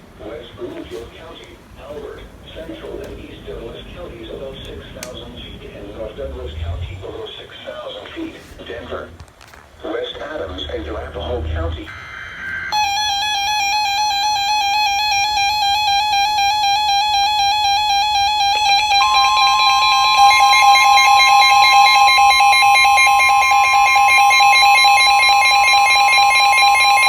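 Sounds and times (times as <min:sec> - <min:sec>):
higher steady tone: 0:05.0 - 0:07.2, 0:10.2 - 0:27.0
electronic alert tone: 0:10.5 - 0:27.0.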